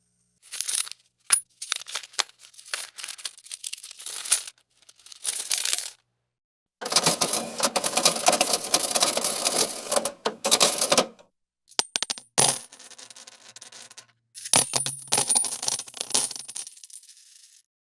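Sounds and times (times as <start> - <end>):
coins clinking and jingling: 0.4 - 6.0, 6.8 - 11.1, 11.8 - 17.6
coins striking and ringing: 5.3 - 5.9, 11.8 - 17.6.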